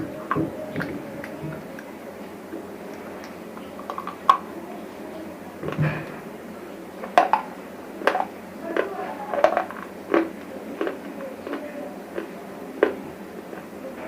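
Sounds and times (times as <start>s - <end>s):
dry chips crunching: 8.0s - 13.7s.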